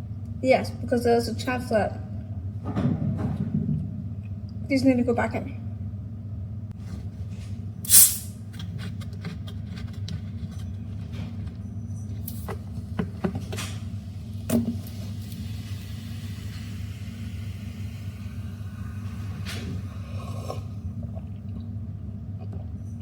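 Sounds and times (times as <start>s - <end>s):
loud sharp clack: 7.9s - 8.3s.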